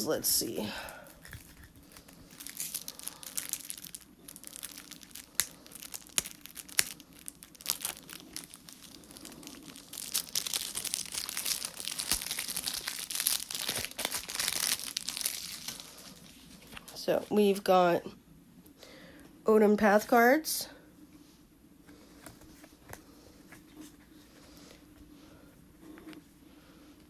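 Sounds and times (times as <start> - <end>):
plastic wrapping tearing and crinkling: 1.0 - 17.0.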